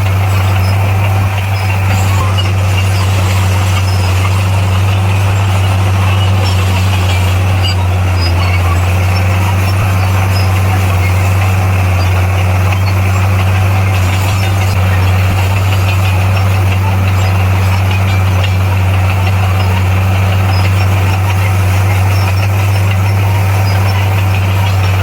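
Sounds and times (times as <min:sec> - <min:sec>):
bulldozer diesel engine drone: 0:00.0 - 0:25.0.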